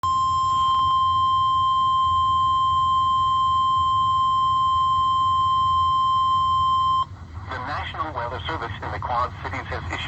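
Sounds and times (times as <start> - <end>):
steady loud alarm tone: 0.0 - 7.0.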